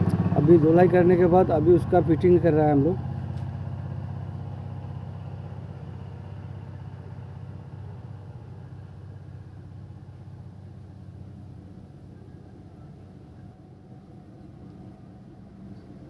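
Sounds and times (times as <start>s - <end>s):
engine rumbling: 0.0s - 16.0s.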